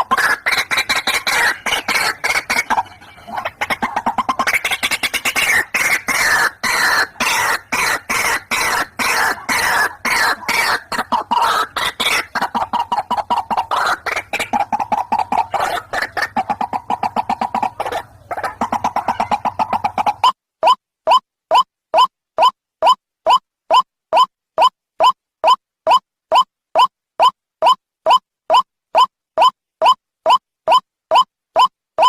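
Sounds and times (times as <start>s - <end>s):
waterhen calling: 0.0s - 23.8s.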